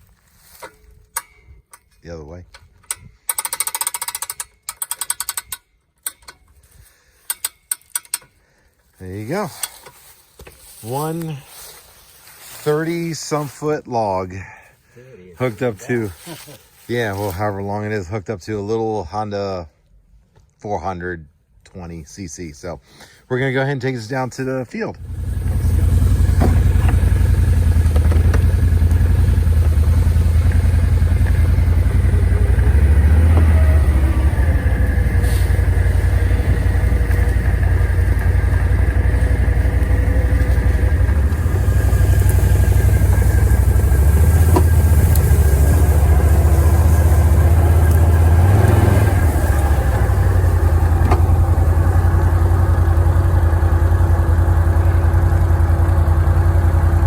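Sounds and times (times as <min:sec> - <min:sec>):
atv engine running: 0:25.0 - 0:57.0.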